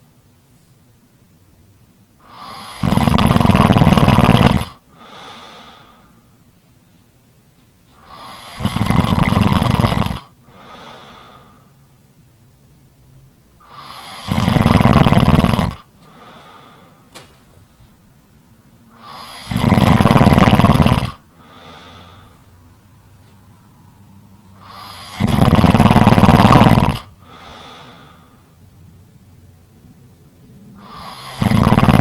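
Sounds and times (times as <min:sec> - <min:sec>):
deep snoring: 0:02.2 - 0:06.1, 0:08.0 - 0:11.6, 0:13.6 - 0:16.9, 0:18.9 - 0:22.4, 0:24.6 - 0:28.4, 0:30.8 - 0:32.0
soft breath out: 0:04.9 - 0:06.4, 0:10.4 - 0:11.8, 0:16.0 - 0:17.1, 0:21.3 - 0:22.6, 0:27.2 - 0:28.6.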